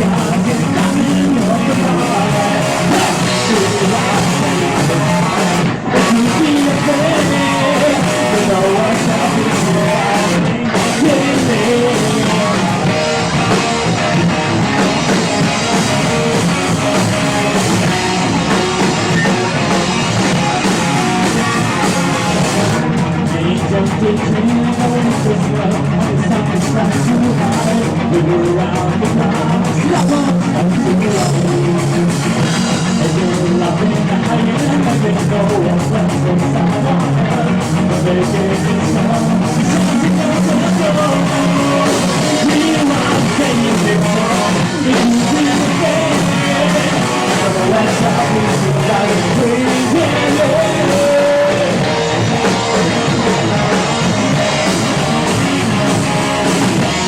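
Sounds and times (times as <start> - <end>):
bass guitar: 0.0 - 57.0
drum kit: 0.0 - 57.0
electric guitars: 0.0 - 57.0
person singing: 0.0 - 57.0.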